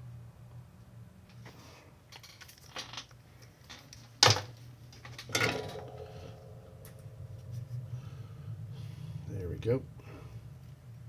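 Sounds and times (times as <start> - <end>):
low steady hum: 3.2 - 11.0.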